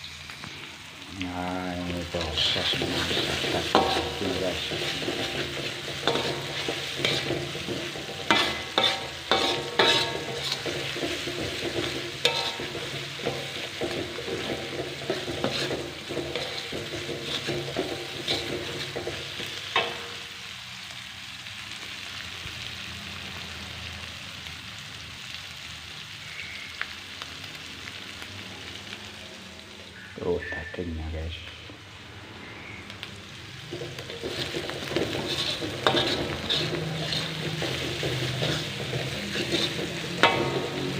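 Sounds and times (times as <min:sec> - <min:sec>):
food sizzling in a pan: 0:00.0 - 0:40.9
spatula scraping a pan: 0:02.2 - 0:20.2, 0:33.6 - 0:40.9.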